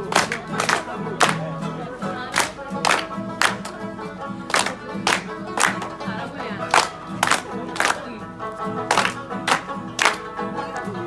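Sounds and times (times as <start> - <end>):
sharp percussive beats: 6.7 - 8.0, 8.9 - 10.2.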